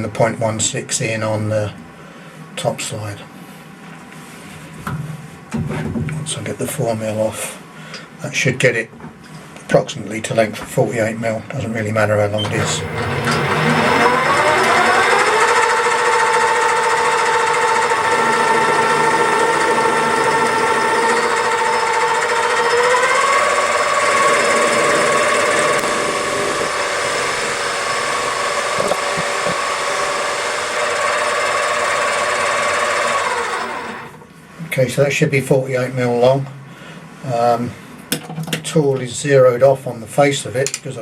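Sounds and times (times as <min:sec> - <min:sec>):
metal lathe motor whining: 0:12.4 - 0:34.2.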